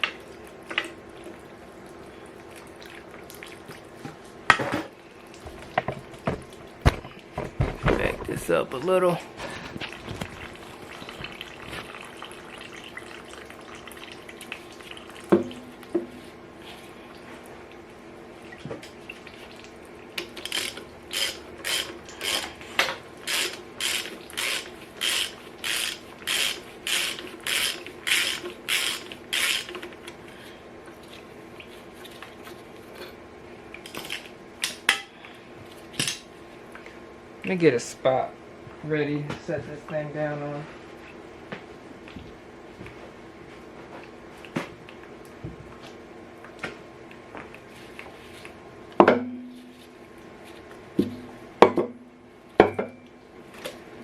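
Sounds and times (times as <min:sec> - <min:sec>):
ratchet wrench clicking: 0:23.3 - 0:29.7.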